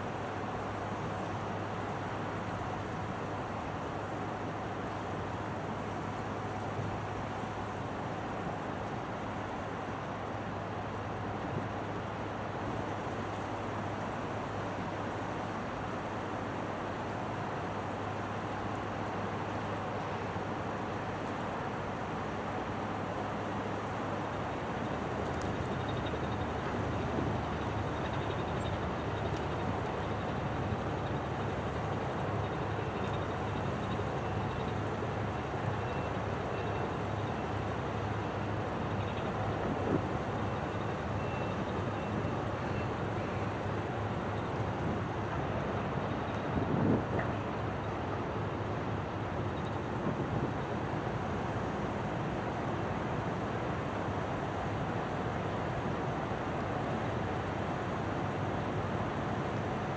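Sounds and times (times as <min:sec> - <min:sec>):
constant wash of noise: 0:00.0 - 0:59.9
wind noise on microphone: 0:39.3 - 0:40.3, 0:44.6 - 0:47.8.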